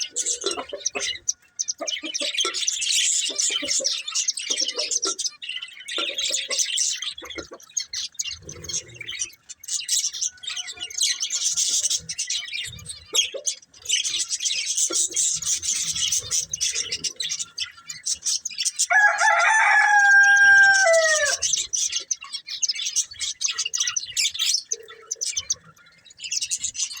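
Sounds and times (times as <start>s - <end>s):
budgerigars chattering and chirping: 0.0s - 27.0s
rooster crowing: 18.9s - 21.6s.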